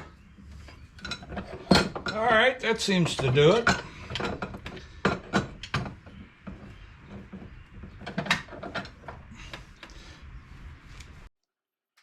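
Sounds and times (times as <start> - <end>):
metal tools clicking and knocking: 0.7 - 9.2.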